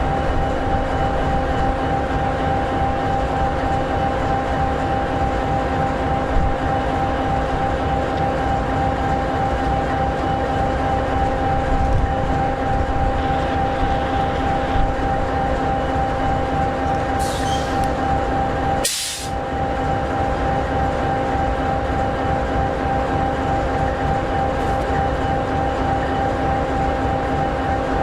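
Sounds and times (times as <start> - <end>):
diesel locomotive idling: 0.0 - 28.0
short hiss: 17.2 - 17.9, 18.8 - 19.3.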